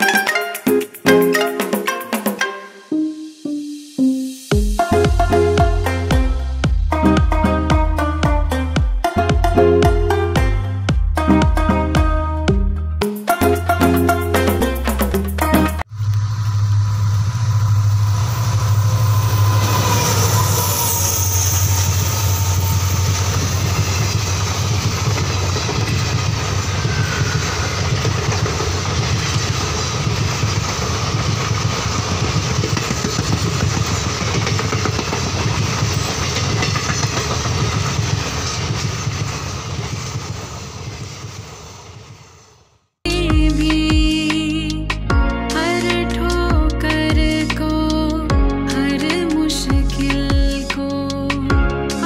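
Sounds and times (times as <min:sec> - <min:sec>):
vehicle running: 0:14.6 - 0:29.6.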